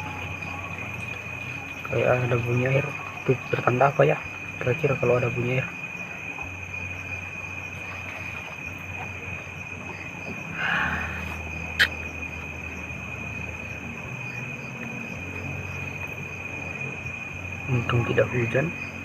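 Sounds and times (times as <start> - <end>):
crickets trilling: 0.0 - 19.0
rustling hiss: 0.0 - 19.0.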